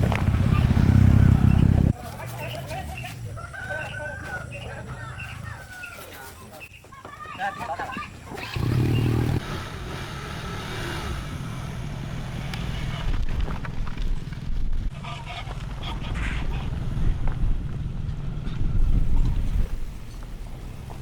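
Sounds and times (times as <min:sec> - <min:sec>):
diesel truck engine rumbling: 0:00.0 - 0:02.0, 0:08.4 - 0:21.0.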